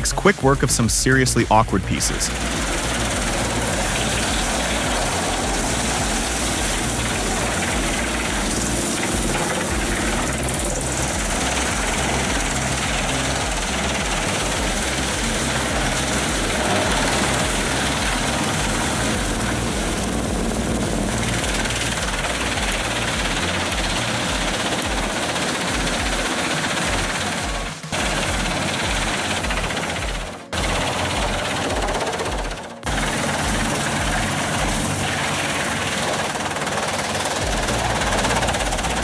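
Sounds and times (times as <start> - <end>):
low rumble: 0.0 - 26.2
wood chipper running: 0.0 - 39.0.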